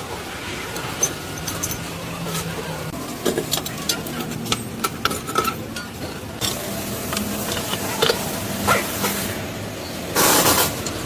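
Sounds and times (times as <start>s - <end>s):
loud hiss: 10.2s - 10.9s.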